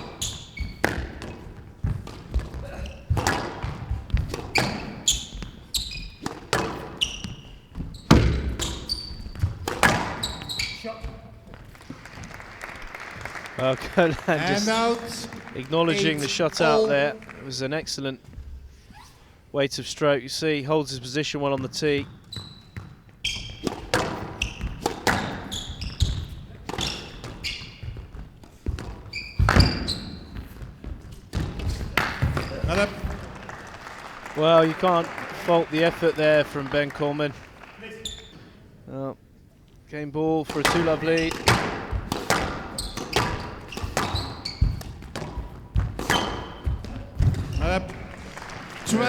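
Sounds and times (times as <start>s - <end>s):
squash ball striking racket and walls: 0.0s - 11.7s, 22.0s - 33.2s, 40.5s - 47.9s
shoes squeaking on court floor: 0.0s - 19.5s, 21.2s - 49.0s.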